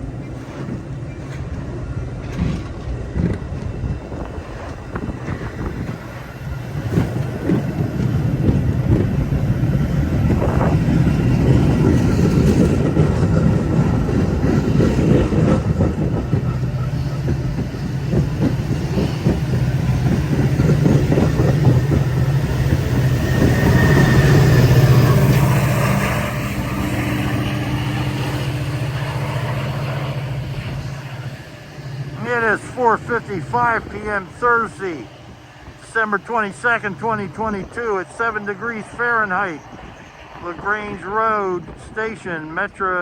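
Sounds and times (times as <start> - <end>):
train wheels clicking over rails: 0.0 - 33.6
diesel train engine drone: 0.0 - 43.0.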